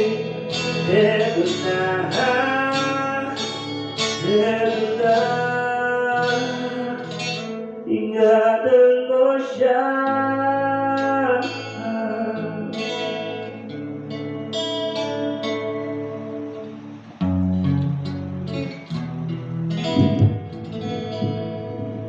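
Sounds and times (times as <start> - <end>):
person singing long notes: 0.0 - 18.9
guitar playing: 0.0 - 22.0.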